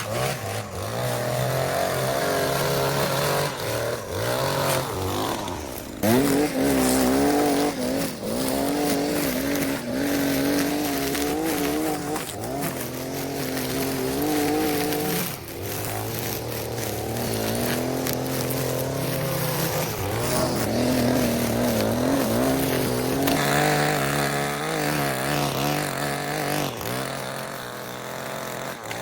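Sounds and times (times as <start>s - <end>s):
small petrol engine running: 0.0s - 29.0s.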